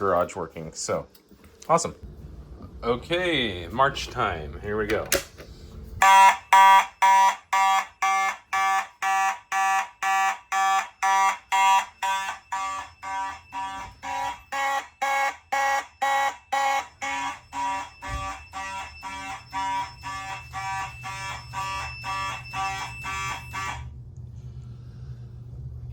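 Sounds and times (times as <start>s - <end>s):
fire alarm horn blasts: 6.0s - 24.0s
faint high whine: 16.3s - 25.2s.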